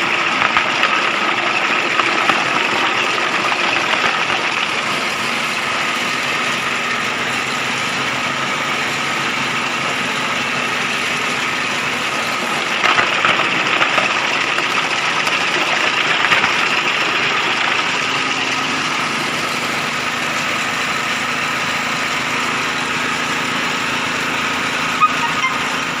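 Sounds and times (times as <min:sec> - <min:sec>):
feather plucker machine running: 0:00.0 - 0:26.0.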